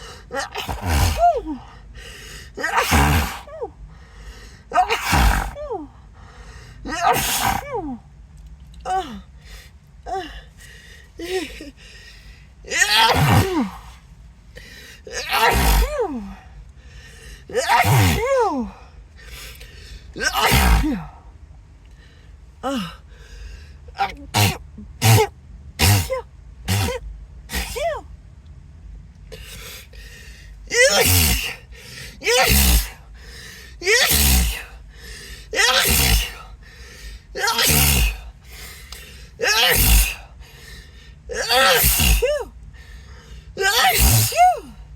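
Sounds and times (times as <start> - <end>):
person sneezing: 0.0 - 1.7, 2.6 - 3.7, 4.7 - 5.9, 6.9 - 8.0, 12.7 - 14.0, 15.1 - 16.4, 17.5 - 18.8, 20.2 - 21.2, 24.0 - 28.1, 30.7 - 36.5, 37.4 - 42.5, 43.6 - 44.8.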